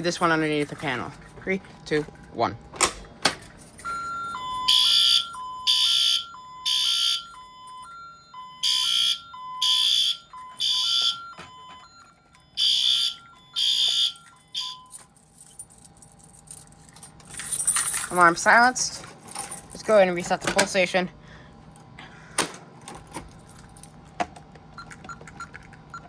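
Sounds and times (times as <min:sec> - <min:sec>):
fire alarm blasts: 0:03.8 - 0:15.1.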